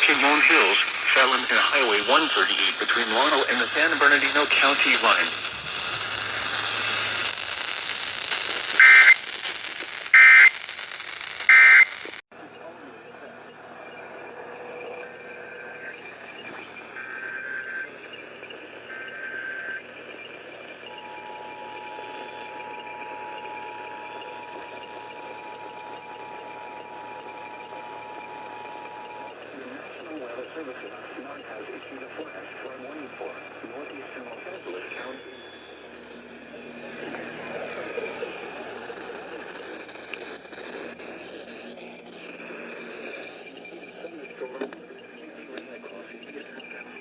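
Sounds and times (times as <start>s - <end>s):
background hiss: 0.0s - 12.2s
buzzy data burst chirps: 0.0s - 12.2s
radio static hiss: 0.0s - 47.0s
two-tone alarm: 8.8s - 9.2s, 10.1s - 10.6s, 11.5s - 11.9s.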